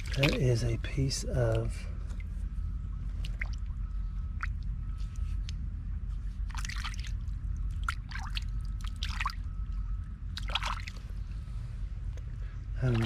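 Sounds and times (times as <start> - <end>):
short splashes: 0.0 - 0.6, 3.2 - 3.7, 6.5 - 9.5, 10.4 - 11.0, 12.8 - 13.0
water sloshing in mud: 0.0 - 0.9, 3.1 - 3.7, 6.4 - 9.5, 10.3 - 11.1, 12.8 - 13.0
steady low rumble: 0.0 - 13.0.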